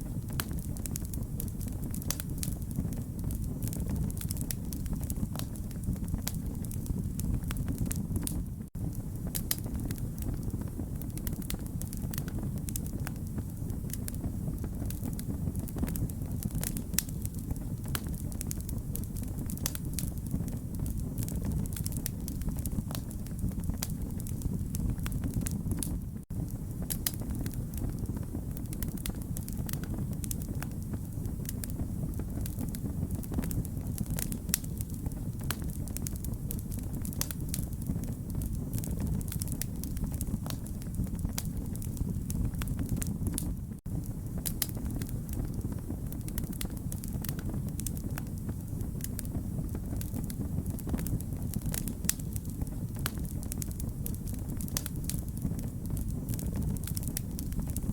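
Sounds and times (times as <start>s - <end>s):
burning logs crackling and popping: 0.0s - 57.9s
low rumble of flames: 0.0s - 57.9s.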